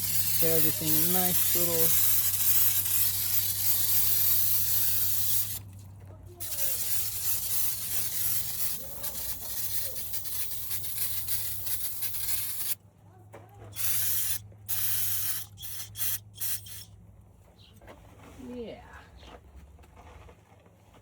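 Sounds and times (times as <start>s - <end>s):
aerosol spray can hissing: 0.0s - 5.6s, 6.4s - 12.8s, 13.8s - 16.9s.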